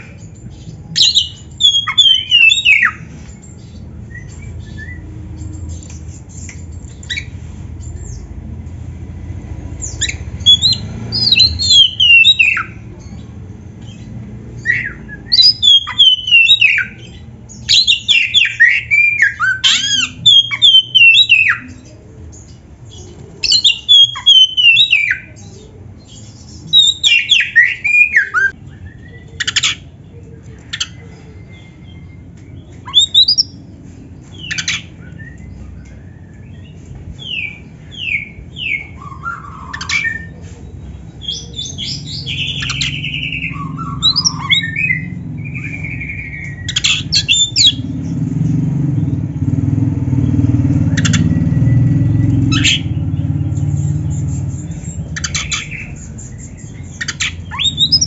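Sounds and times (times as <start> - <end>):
bird singing rapid whistles: 0.0 - 3.1, 9.8 - 12.8, 14.6 - 21.8, 23.4 - 25.4, 26.4 - 29.9, 31.9 - 33.6, 34.3 - 40.4, 41.2 - 48.2, 50.7 - 58.0.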